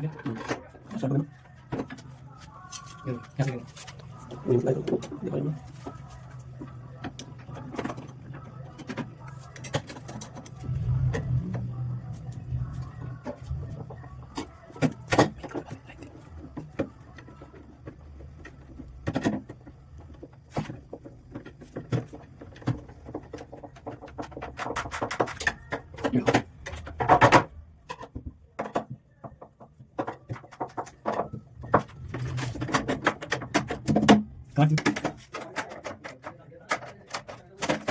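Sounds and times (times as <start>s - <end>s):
wooden pieces tapping and knocking: 13.0s - 37.9s.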